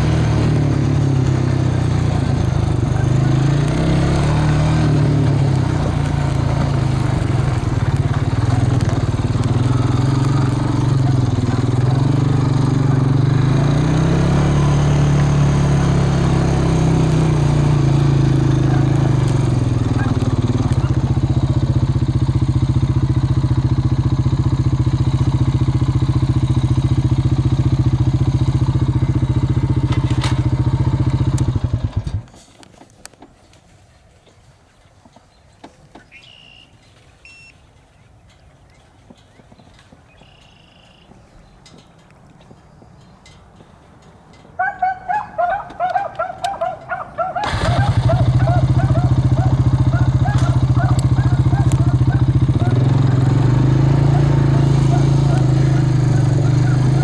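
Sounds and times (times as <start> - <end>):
vehicle engine running: 0.0 - 32.4, 44.6 - 57.0.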